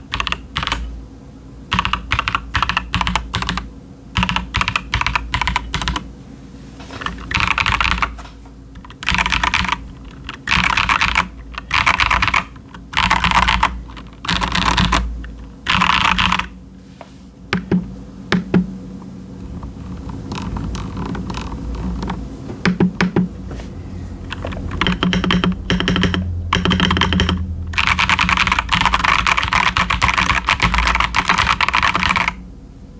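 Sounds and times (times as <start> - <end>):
typing on mechanical keyboard: 0.0 - 0.9, 1.7 - 6.1, 7.0 - 8.2, 8.8 - 16.6, 24.3 - 32.4.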